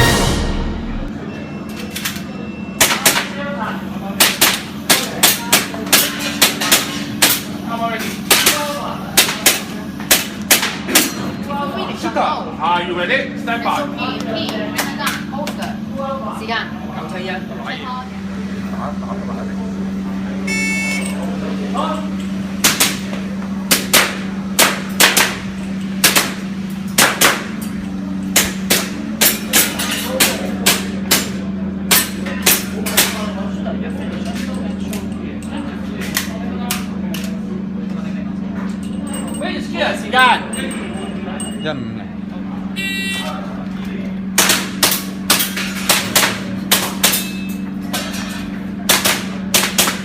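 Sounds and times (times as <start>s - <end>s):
steady low hum: 0.0s - 1.7s
airsoft pistol shots: 23.7s - 25.4s, 26.0s - 26.4s.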